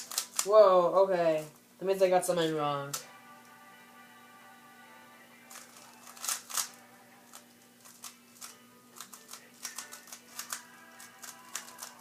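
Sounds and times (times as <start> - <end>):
puzzle cube plastic clicks: 0.0 - 0.5, 5.5 - 12.0
faint background music: 0.0 - 12.0.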